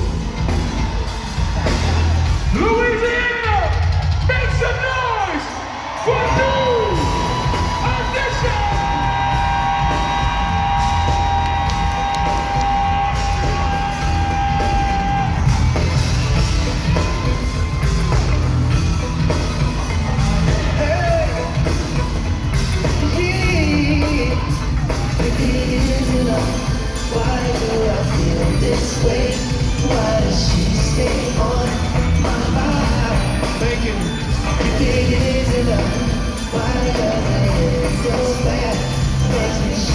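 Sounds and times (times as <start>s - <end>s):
audience yelling: 0.0s - 30.5s
live band music: 0.0s - 39.9s
person singing: 23.0s - 39.9s.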